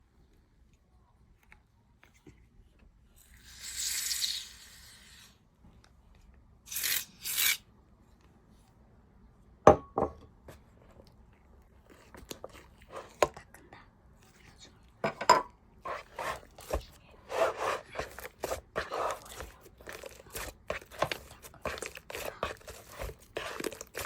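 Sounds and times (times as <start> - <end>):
hissing soap foam handling: 15.9 - 24.0.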